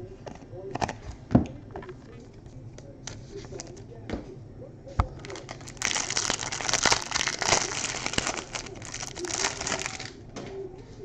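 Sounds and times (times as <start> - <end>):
plastic wrapper crinkling and tearing: 5.2 - 10.2.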